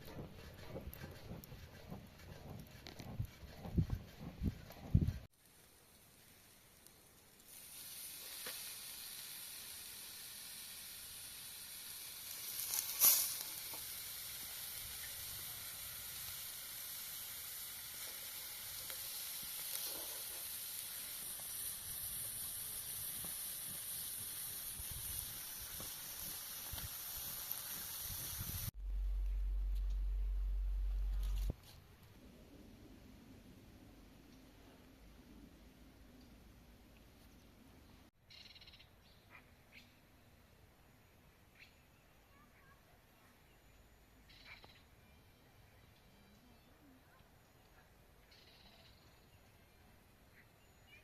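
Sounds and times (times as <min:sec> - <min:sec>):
meat sizzling: 0:05.4 - 0:28.7
steady low hum: 0:28.6 - 0:36.8.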